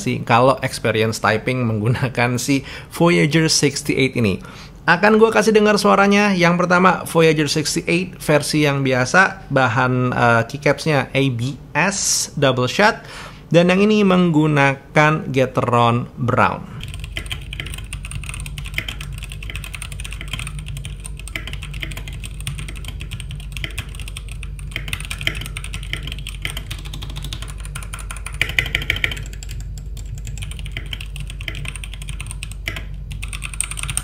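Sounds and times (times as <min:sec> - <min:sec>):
mechanical keyboard typing: 0:16.8 - 0:34.0.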